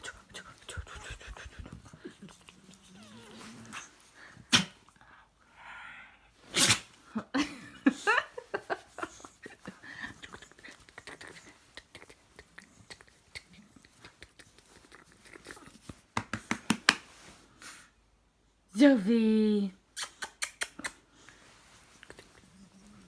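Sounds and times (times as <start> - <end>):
dog sneezing: 4.4 - 4.9, 6.4 - 7.0, 20.0 - 21.0.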